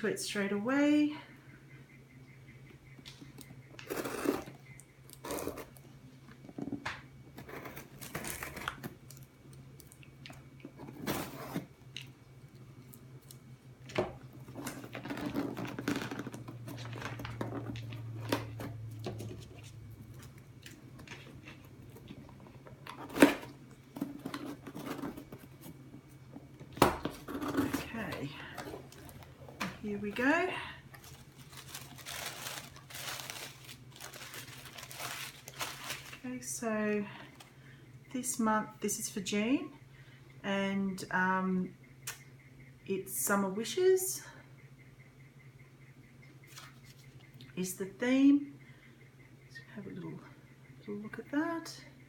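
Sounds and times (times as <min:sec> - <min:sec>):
packaging tearing and crinkling: 0:31.0 - 0:36.2.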